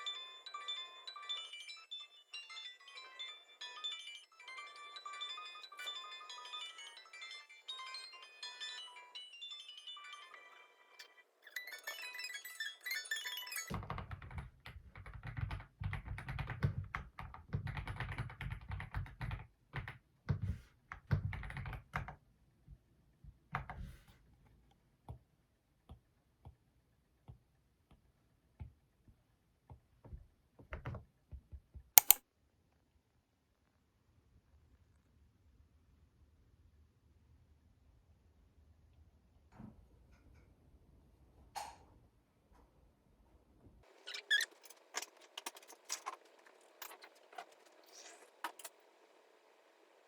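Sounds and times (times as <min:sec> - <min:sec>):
typing on computer keyboard: 0:13.7 - 0:20.0, 0:21.0 - 0:22.2, 0:32.0 - 0:32.2
loud sharp click: 0:32.0 - 0:32.2.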